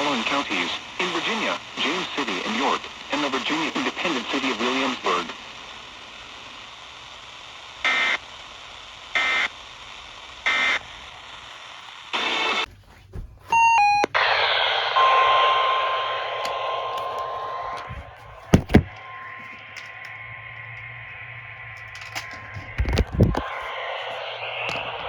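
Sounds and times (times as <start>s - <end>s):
static burst: 0.0s - 25.0s
stepped descending beeps: 13.5s - 14.1s.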